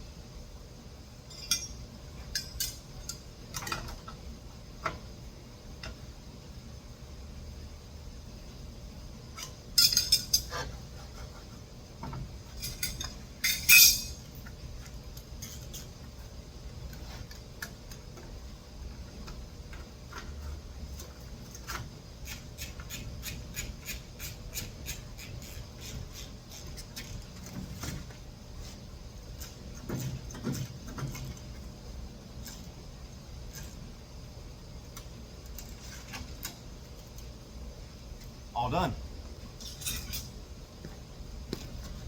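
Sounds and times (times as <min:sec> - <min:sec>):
metal tools clinking and jangling: 0:01.3 - 0:03.2, 0:09.4 - 0:10.6, 0:12.6 - 0:14.2, 0:39.6 - 0:40.3.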